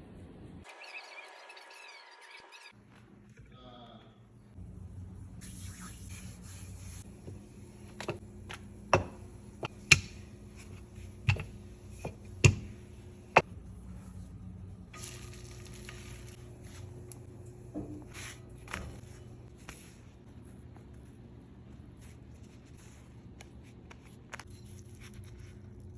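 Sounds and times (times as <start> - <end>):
steady low hum: 3.1 - 25.9
pan sizzling: 15.0 - 17.1.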